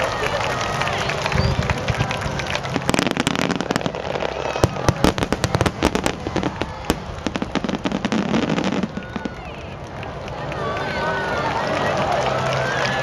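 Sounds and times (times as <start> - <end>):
fireworks bangs and crackles: 0.4 - 10.2.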